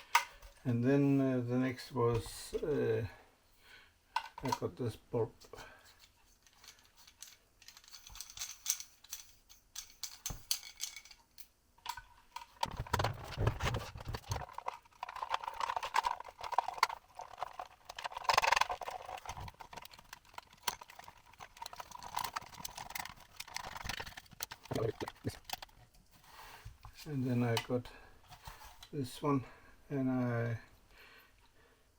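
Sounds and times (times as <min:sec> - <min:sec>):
small parts clicking and rattling: 0:05.4 - 0:28.9.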